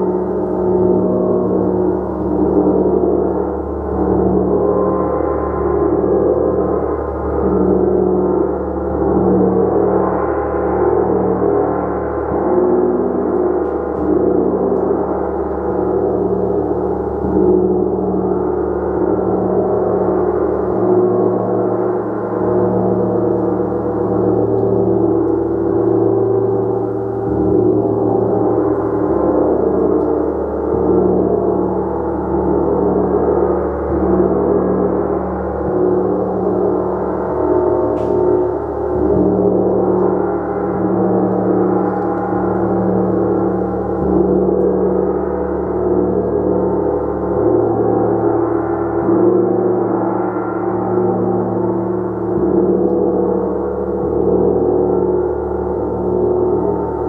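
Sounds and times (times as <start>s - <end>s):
gong ringing: 18.6s - 57.0s.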